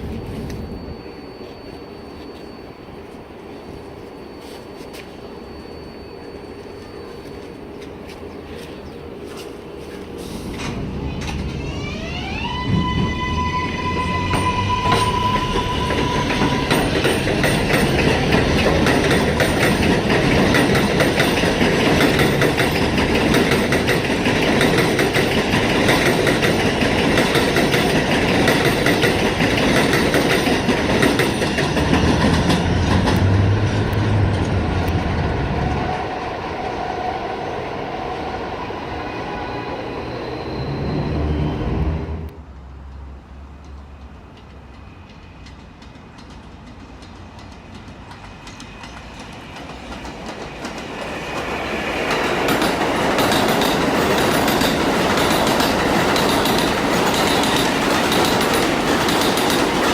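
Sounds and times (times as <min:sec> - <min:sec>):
train rumbling on rails: 0:00.0 - 0:59.9
wheels clicking over track: 0:43.6 - 0:59.9.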